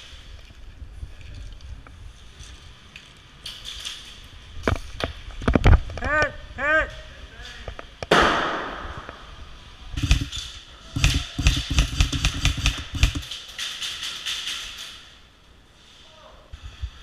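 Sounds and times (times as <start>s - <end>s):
airsoft gun firing: 8.1s - 9.1s, 10.0s - 13.4s.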